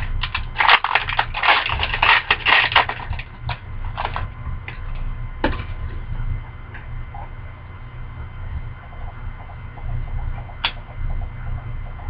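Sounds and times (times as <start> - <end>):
cards rustling: 0.0 - 4.3
low steady hum: 0.0 - 12.0.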